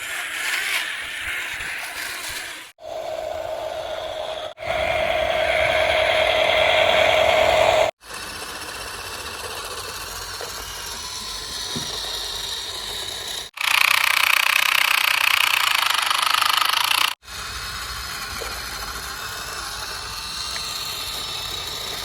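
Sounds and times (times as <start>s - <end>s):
small electric motors whirring: 0.0s - 22.0s.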